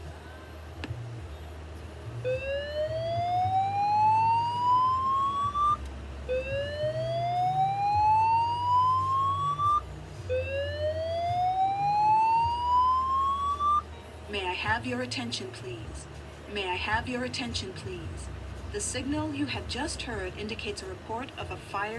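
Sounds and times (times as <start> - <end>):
rising whoop alarm tone: 2.2 - 13.8.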